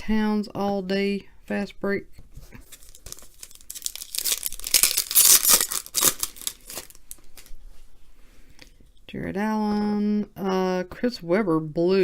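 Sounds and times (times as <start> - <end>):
wrapper tearing and crinkling: 2.7 - 7.5.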